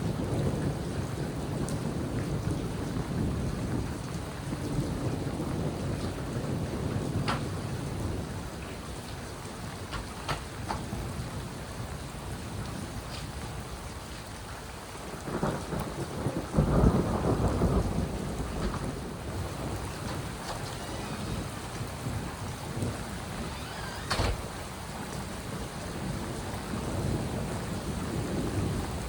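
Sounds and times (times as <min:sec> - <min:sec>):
steady rain falling: 0:00.0 - 0:29.0
thunder rumbling: 0:15.2 - 0:29.0.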